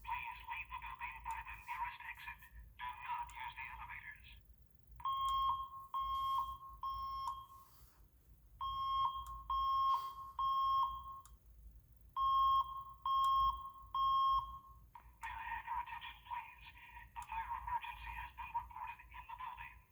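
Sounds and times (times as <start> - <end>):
spoken alarm messages: 0.0 - 4.4
fire alarm evacuation beeps: 5.0 - 7.8, 8.6 - 11.4, 12.1 - 14.9.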